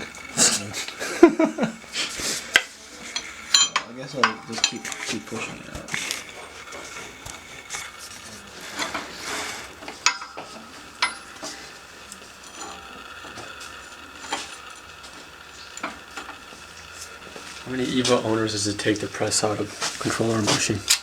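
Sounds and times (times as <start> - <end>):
metal scraping and clinking: 3.0 - 14.9.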